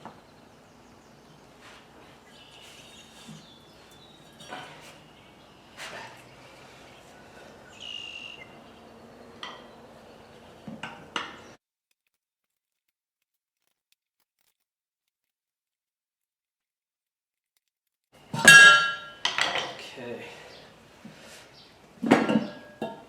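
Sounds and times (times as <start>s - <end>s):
hand tools clinking: 3.0s - 5.2s, 18.3s - 19.8s.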